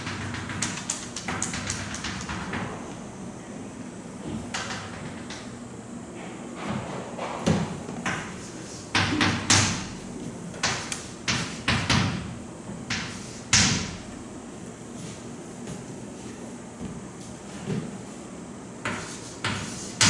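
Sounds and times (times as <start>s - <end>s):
sharp knocks and clacks: 0.0s - 2.8s
steady low hum: 0.0s - 20.0s.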